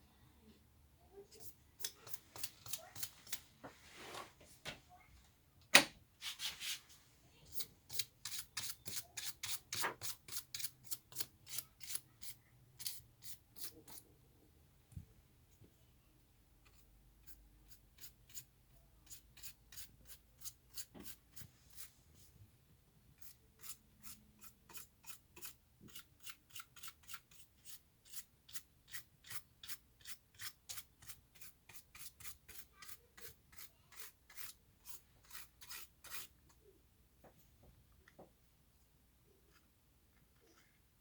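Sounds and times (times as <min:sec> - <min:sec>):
brush scratching strokes: 0:06.2 - 0:07.0, 0:19.0 - 0:22.4, 0:29.3 - 0:36.4.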